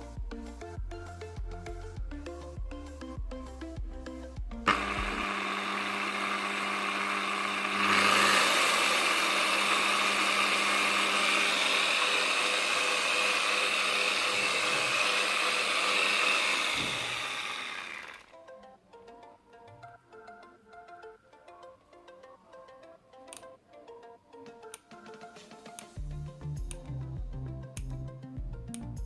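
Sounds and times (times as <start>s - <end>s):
electric polisher motor whine: 4.7s - 18.3s.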